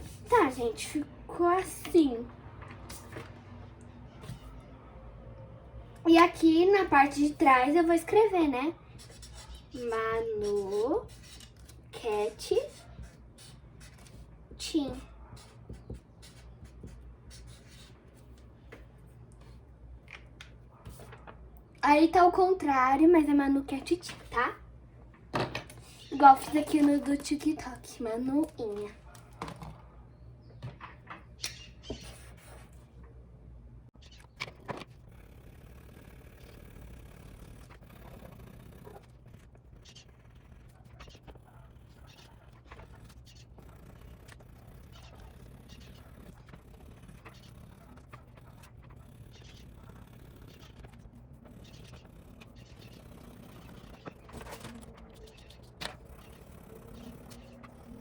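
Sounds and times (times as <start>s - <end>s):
faint low hum: 0.0s - 58.0s
paper scratching and rustling: 9.0s - 14.8s, 25.9s - 29.0s, 34.0s - 58.0s.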